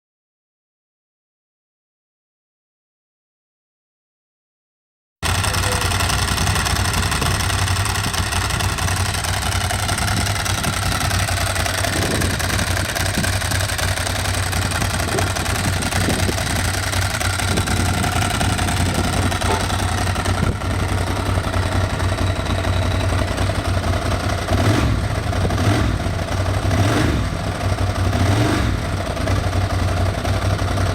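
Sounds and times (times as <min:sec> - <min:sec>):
dry clutch rattling: 0:05.2 - 0:30.9
motorcycle engine idling: 0:05.2 - 0:30.9.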